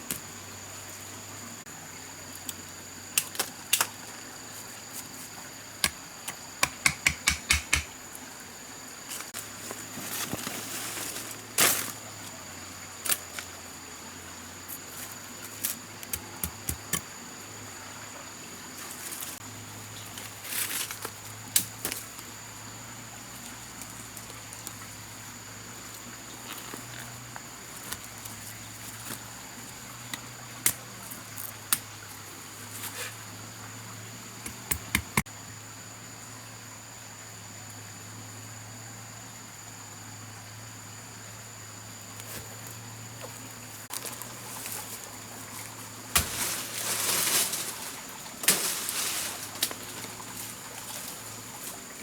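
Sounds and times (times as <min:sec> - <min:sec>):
sharp knocks and taps: 0:06.6 - 0:07.9
rustling: 0:09.1 - 0:12.0, 0:43.9 - 0:51.9.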